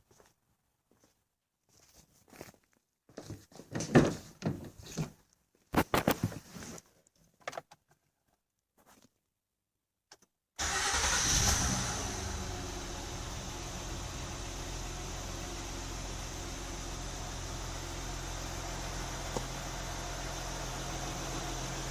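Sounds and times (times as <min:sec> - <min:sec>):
car engine starting and running: 0:10.6 - 0:21.9.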